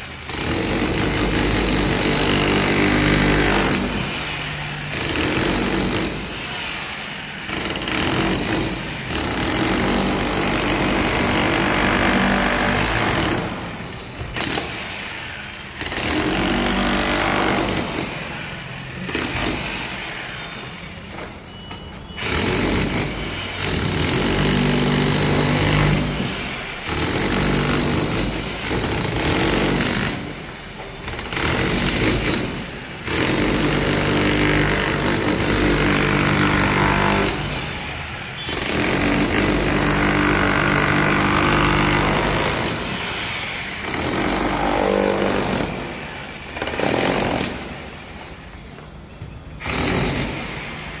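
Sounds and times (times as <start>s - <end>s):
demolition hammer breaking concrete: 0.3s - 6.5s, 7.4s - 14.9s, 15.8s - 19.9s, 22.2s - 37.8s, 38.4s - 43.1s, 43.8s - 48.0s, 48.9s - 51.0s.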